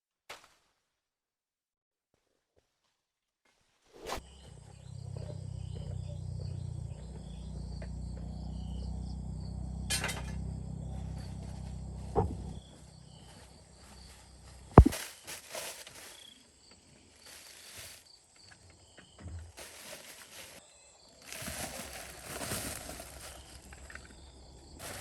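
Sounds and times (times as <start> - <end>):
insects chirping: 4.1 - 25.0
steady low hum: 4.2 - 14.9.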